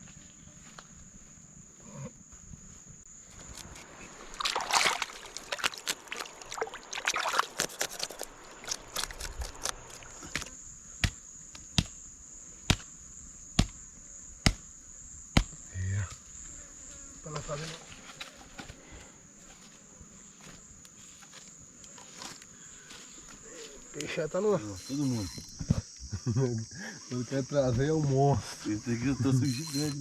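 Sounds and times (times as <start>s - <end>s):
water splashing and sloshing: 3.8s - 10.2s
sharp single knocks: 14.4s - 14.6s
high-pitched insect drone: 15.0s - 30.0s.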